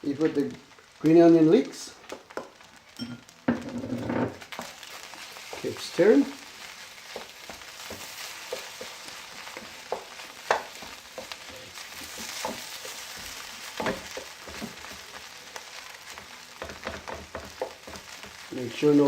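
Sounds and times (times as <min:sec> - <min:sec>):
rice sizzling in a pan: 0:00.0 - 0:19.0
spatula scraping a pan: 0:03.6 - 0:18.5.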